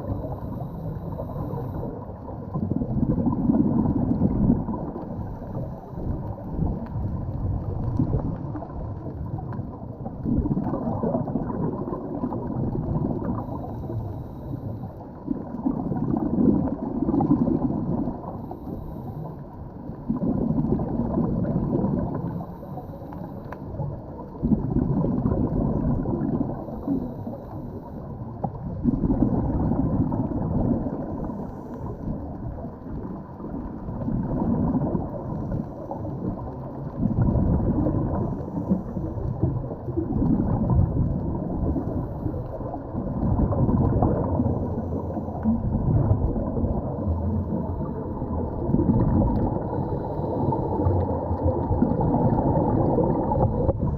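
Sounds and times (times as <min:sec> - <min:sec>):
muffled rush of exhaled bubbles: 0:00.0 - 0:53.9
quiet underwater noise: 0:00.0 - 0:53.9.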